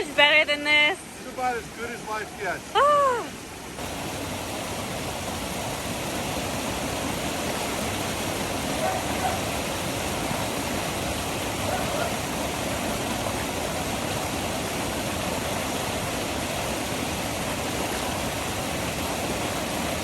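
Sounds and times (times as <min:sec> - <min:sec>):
waterfall roar: 0:01.2 - 0:20.0.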